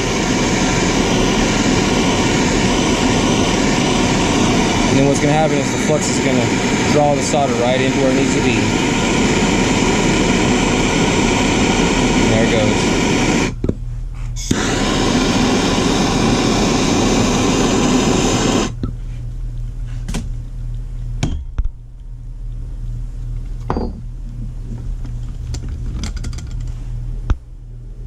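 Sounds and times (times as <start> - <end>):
torch flame hissing: 0.0 - 13.6, 14.3 - 18.8
low steady hum: 0.0 - 28.0.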